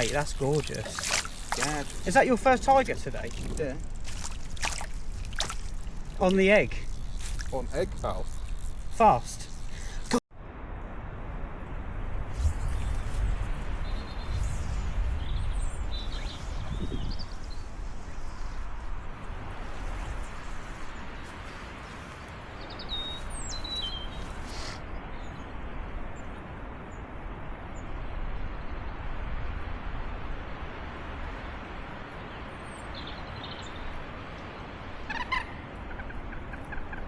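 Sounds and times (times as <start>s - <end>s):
small birds chirping: 0.0s - 10.2s, 20.1s - 25.4s
wind buffeting microphone: 12.0s - 21.0s.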